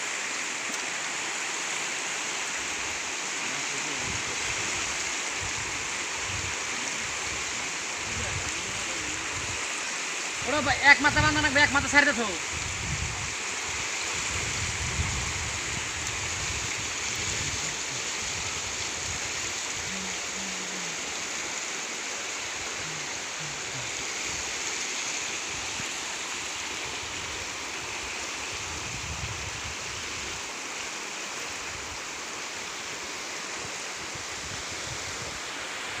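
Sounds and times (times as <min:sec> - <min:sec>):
floodwater rushing: 0:00.0 - 0:36.0.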